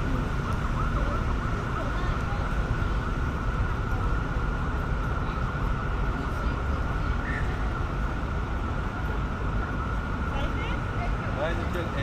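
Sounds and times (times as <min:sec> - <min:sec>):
city street traffic: 0:00.0 - 0:12.0.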